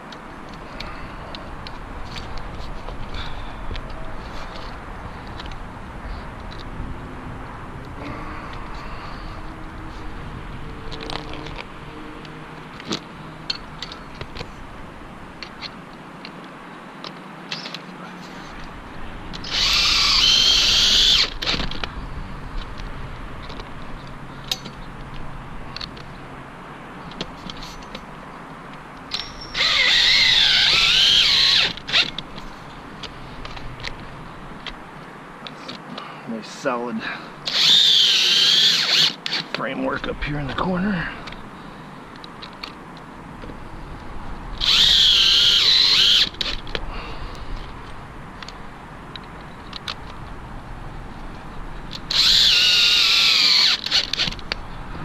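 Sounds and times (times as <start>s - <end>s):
power drill driving a screw: 19.4s - 21.7s, 29.1s - 32.2s, 37.5s - 39.5s, 44.6s - 46.6s, 52.0s - 54.4s.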